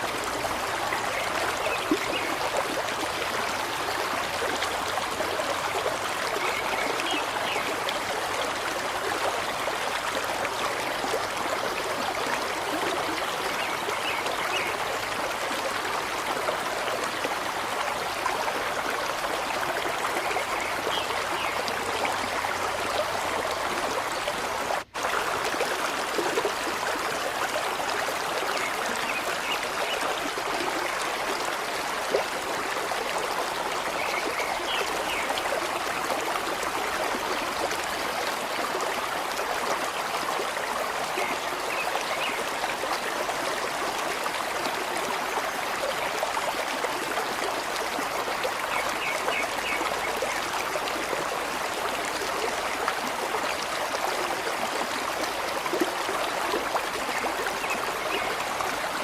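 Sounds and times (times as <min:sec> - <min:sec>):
stream water trickling: 0:00.0 - 0:59.0.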